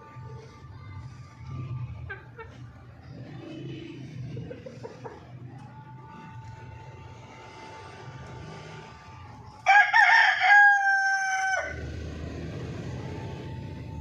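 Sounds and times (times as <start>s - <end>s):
rooster crowing: 9.6s - 12.0s.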